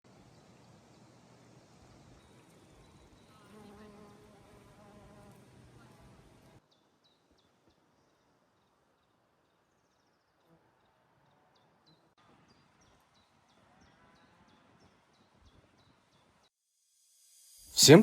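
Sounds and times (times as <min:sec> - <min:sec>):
insect buzzing: 0:03.3 - 0:05.5, 0:16.7 - 0:18.0.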